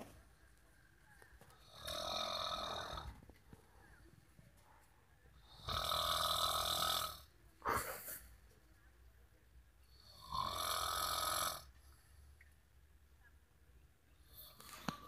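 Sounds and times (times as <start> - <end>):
person snoring: 1.6 - 3.2.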